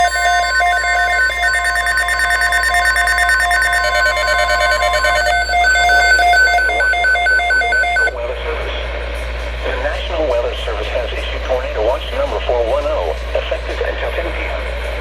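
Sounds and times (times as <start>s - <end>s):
rapid electronic alarm beeps: 0.0s - 8.1s
steady alert tone: 0.0s - 8.1s.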